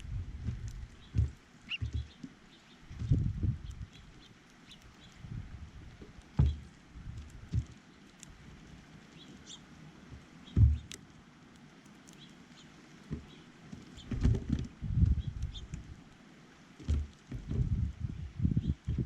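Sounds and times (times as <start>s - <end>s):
dull low thumps and knocks: 0.0s - 4.2s, 5.2s - 7.8s, 10.1s - 11.0s, 14.0s - 15.9s, 16.8s - 19.0s
small birds chirping: 0.0s - 16.0s, 18.0s - 19.0s.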